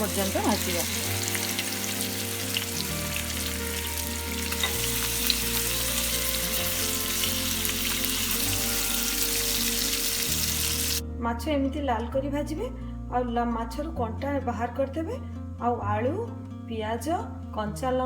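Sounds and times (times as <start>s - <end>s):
fish frying in hot oil: 0.0s - 11.0s.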